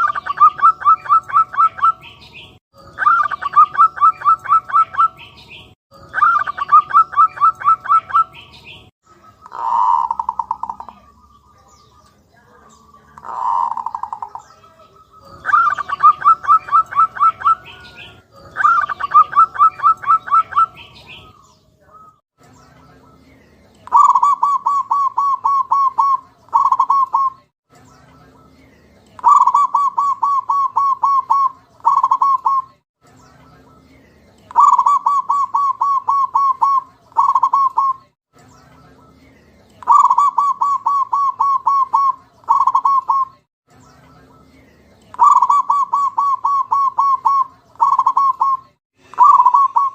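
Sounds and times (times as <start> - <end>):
dove cooing: 0.0 - 2.0, 3.0 - 5.2, 6.1 - 8.5, 9.2 - 11.2, 12.9 - 21.4, 23.9 - 27.3, 29.2 - 32.6, 34.5 - 38.0, 39.8 - 43.3, 45.2 - 49.9.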